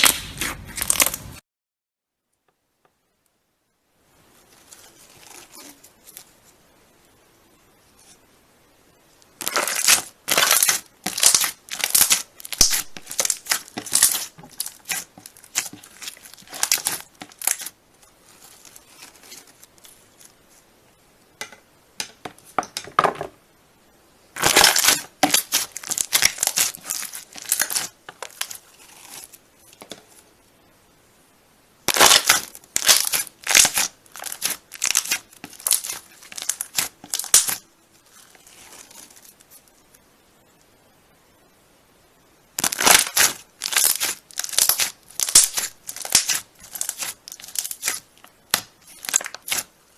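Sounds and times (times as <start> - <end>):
slime crackling pops: 9.4 - 17.7.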